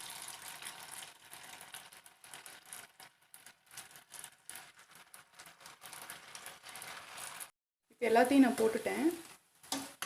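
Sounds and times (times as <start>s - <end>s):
oil deep-frying with crackles: 0.0s - 10.0s.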